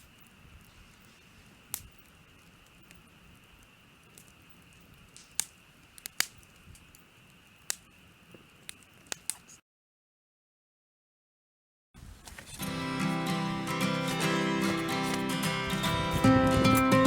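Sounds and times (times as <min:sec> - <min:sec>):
campfire crackling and popping: 0:00.0 - 0:09.6, 0:12.2 - 0:17.0.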